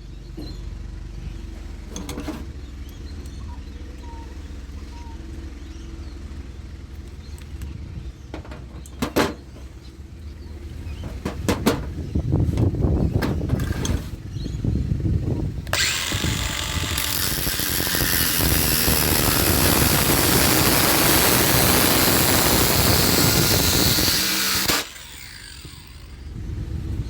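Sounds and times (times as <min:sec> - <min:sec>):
cutting disc grinding metal: 0:13.4 - 0:14.2, 0:15.7 - 0:26.2.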